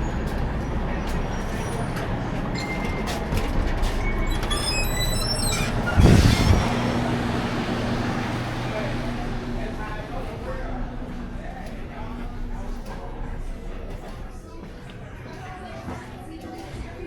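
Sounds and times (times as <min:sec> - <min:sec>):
diesel truck engine running: 0:00.0 - 0:14.7
short high squeaks: 0:02.6 - 0:03.2, 0:04.0 - 0:07.0.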